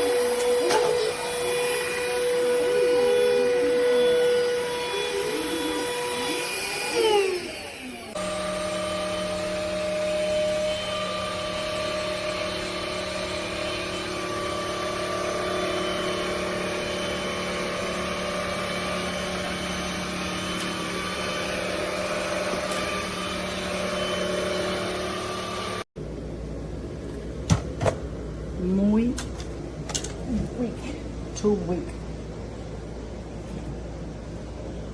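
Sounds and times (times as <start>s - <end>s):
stick vacuum motor humming: 0.0s - 25.8s.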